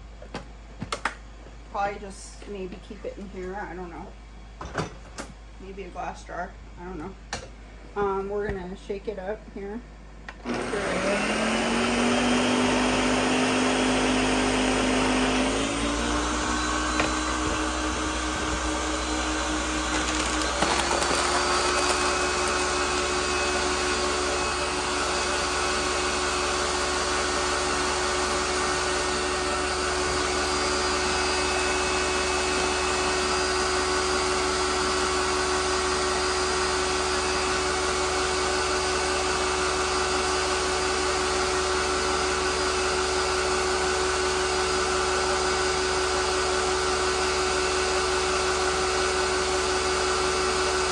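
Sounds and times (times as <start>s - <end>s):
small electric motor humming: 10.5s - 35.2s.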